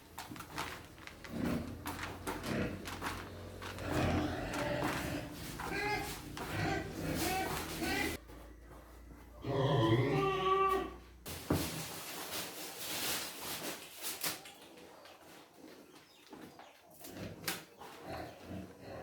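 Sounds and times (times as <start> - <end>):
rustling: 0.0 - 9.4, 10.8 - 14.8
farm animal calling: 0.6 - 11.2.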